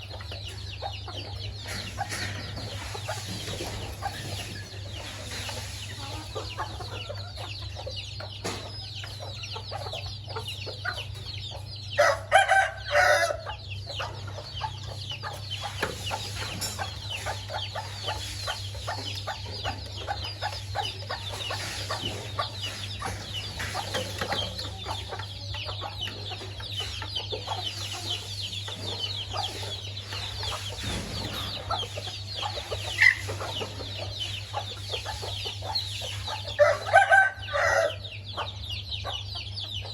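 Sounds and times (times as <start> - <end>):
chickens clucking: 0.0 - 39.9
rooster crowing: 12.0 - 13.5, 36.6 - 38.0.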